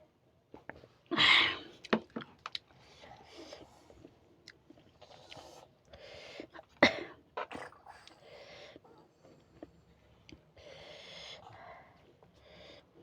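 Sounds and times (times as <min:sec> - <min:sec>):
soft breaths: 0:02.7 - 0:06.7, 0:07.7 - 0:13.0
chewing and wet mouth clicks: 0:04.4 - 0:05.6.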